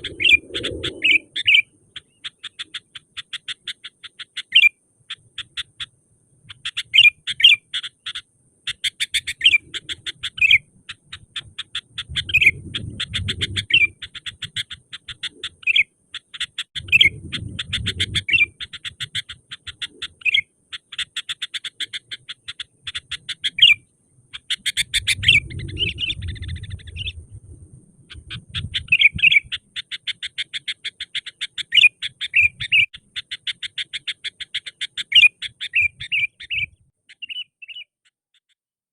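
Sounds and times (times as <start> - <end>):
bird chattering and whistling: 0.0 - 27.3, 28.0 - 38.5
soft low rumbles: 25.0 - 29.5.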